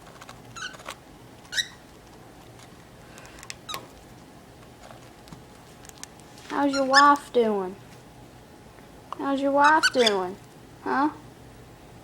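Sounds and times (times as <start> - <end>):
cockatiel chirping: 1.5 - 1.8, 9.6 - 10.3.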